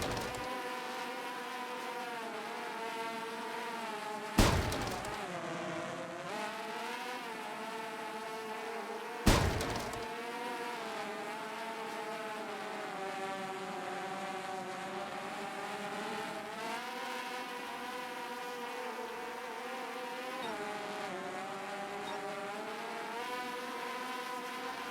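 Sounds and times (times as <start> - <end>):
drone motors whining: 0.0 - 0.5, 4.4 - 5.2, 9.3 - 10.0
loud thump: 0.0 - 0.5, 4.4 - 5.2, 9.3 - 10.1.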